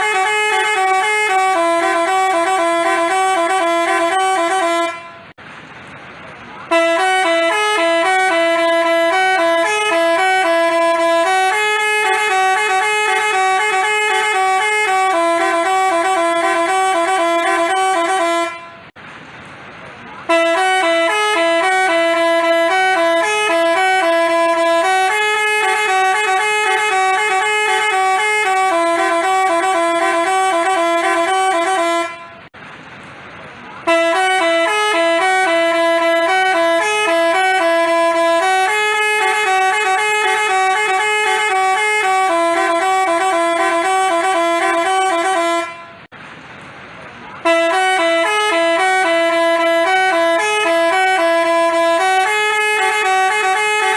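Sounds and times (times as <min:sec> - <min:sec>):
multi-tone bus horn melody: 0:00.0 - 0:05.4, 0:06.5 - 0:19.0, 0:20.1 - 0:32.6, 0:33.7 - 0:46.1, 0:47.3 - 0:53.9.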